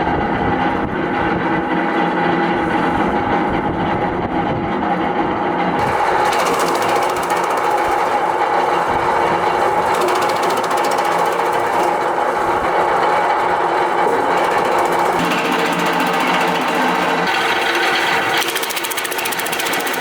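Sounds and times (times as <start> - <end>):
motor hum: 0.0 - 20.0
wood chipper clattering: 5.7 - 20.0.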